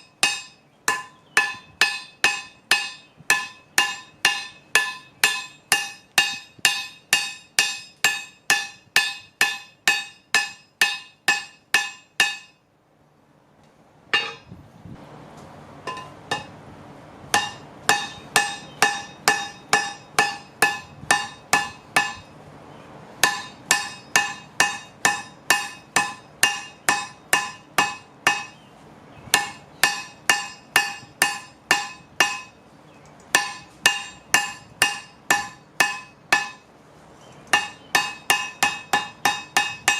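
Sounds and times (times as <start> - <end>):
hammer striking steel on anvil: 0.0 - 12.6, 14.1 - 14.5, 15.9 - 16.6, 17.3 - 22.3, 23.2 - 28.6, 29.3 - 32.6, 33.3 - 36.7, 37.5 - 39.9.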